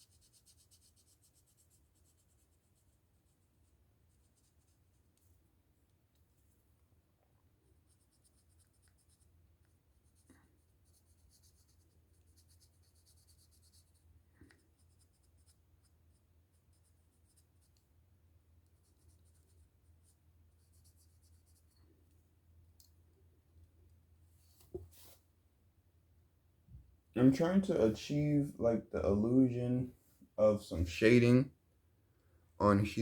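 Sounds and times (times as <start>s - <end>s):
marker scratching on plastic: 0.0s - 5.0s, 7.9s - 17.8s, 18.6s - 21.8s.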